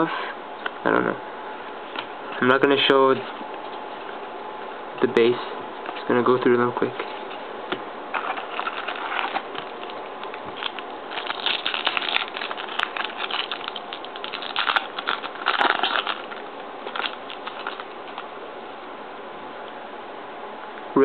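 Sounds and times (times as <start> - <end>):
cards flipping and rustling: 8.1 - 18.3.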